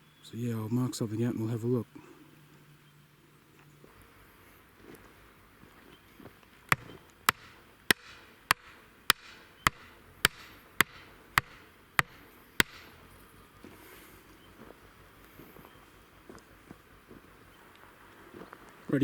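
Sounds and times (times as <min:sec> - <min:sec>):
hammer driving a stake: 0:06.7 - 0:13.1.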